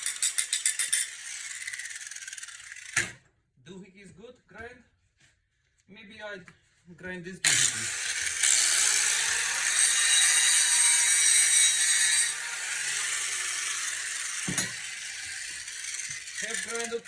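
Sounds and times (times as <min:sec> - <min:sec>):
power grinder grinding metal: 0:00.0 - 0:03.1, 0:07.5 - 0:17.0.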